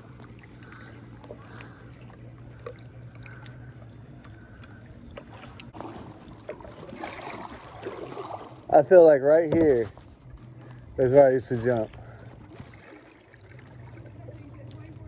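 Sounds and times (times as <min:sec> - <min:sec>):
water dripping and trickling: 0:00.0 - 0:08.7
steady low hum: 0:00.0 - 0:15.0.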